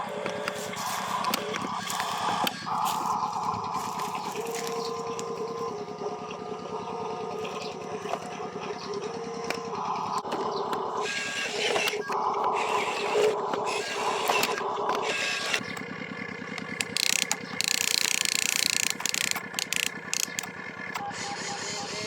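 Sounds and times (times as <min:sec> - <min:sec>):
gear noise: 0:00.0 - 0:22.0
model motors pulsing: 0:00.0 - 0:22.0.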